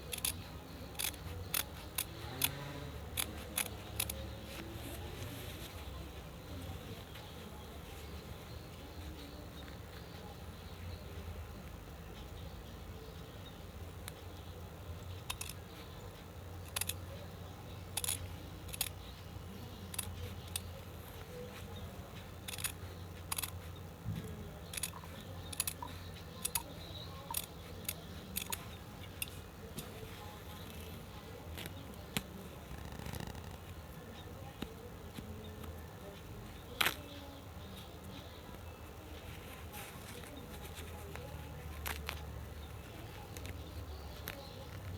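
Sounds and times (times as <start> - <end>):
scissors snipping cloth: 0.0 - 5.8
low steady hum: 0.0 - 44.9.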